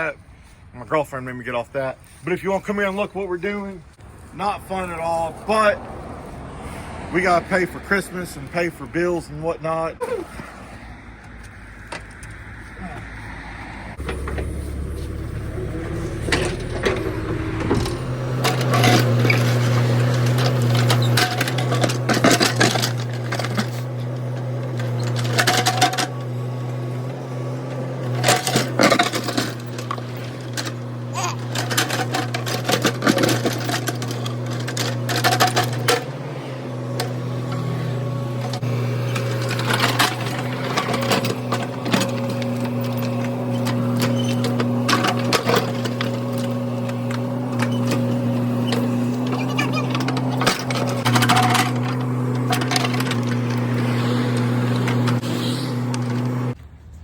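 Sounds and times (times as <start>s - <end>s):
excavator engine droning: 3.9s - 8.5s, 10.4s - 57.0s
machine clanks and scrapes: 14.0s - 56.6s.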